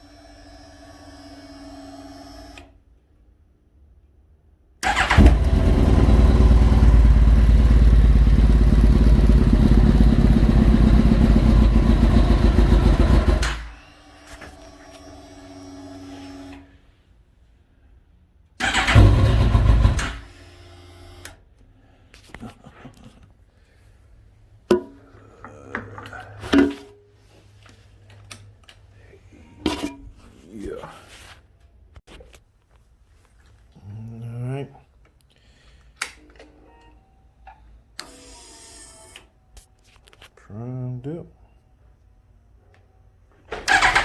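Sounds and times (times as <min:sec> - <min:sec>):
fuel pump humming: 0:04.9 - 0:13.6
motorcycle engine running: 0:04.9 - 0:13.6, 0:18.8 - 0:20.2.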